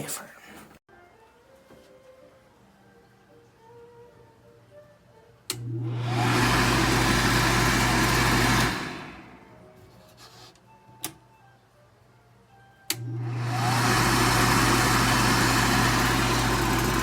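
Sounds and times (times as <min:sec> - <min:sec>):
hand dryer click: 0:05.5 - 0:09.2, 0:12.9 - 0:17.0
hand dryer blowing: 0:05.5 - 0:09.7, 0:13.0 - 0:17.0.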